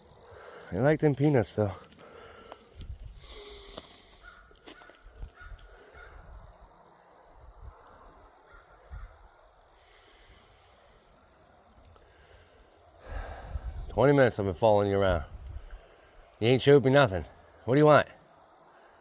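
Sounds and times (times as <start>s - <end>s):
crows cawing faintly: 1.8s - 10.3s.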